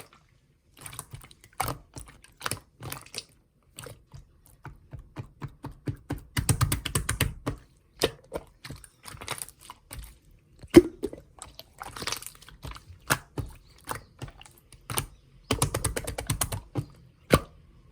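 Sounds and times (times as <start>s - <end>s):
hands squishing slime: 0.0s - 17.5s
slime clicking and popping: 4.6s - 10.1s, 11.8s - 17.5s.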